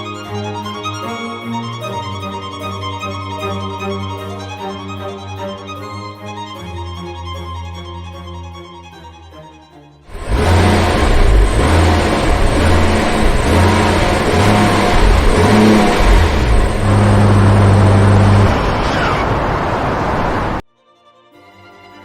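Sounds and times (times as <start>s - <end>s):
car engine accelerating: 10.1s - 20.6s.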